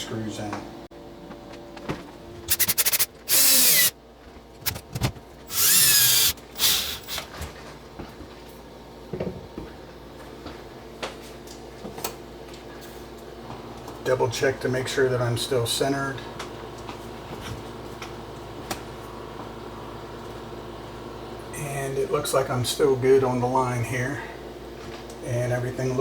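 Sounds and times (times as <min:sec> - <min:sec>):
handling noise: 0:02.0 - 0:07.3
power drill driving screws: 0:02.5 - 0:03.9, 0:04.6 - 0:07.3.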